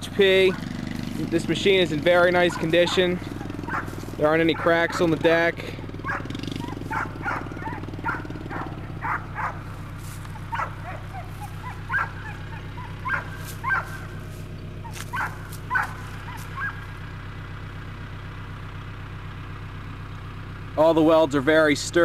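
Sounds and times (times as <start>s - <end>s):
steady low hum: 0.0s - 17.4s
dog yipping and barking: 2.4s - 5.4s, 6.0s - 17.0s.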